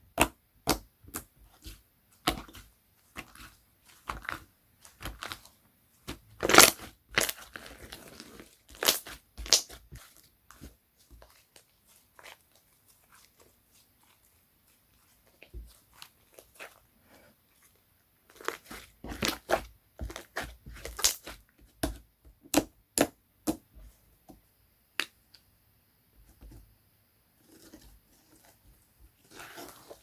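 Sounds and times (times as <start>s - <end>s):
slime clicking and popping: 8.8s - 9.8s.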